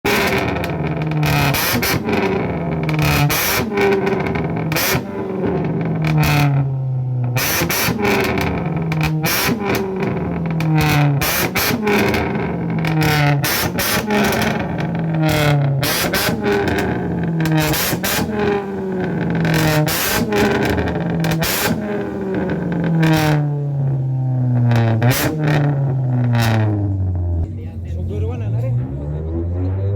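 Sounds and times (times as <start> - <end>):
low bass line: 0.1 - 29.9
distorted guitar: 24.6 - 29.9.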